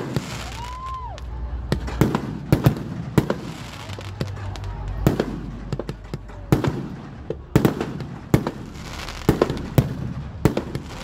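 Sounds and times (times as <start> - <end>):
firecracker bangs: 0.0 - 11.0
low steady rumble: 4.2 - 11.0.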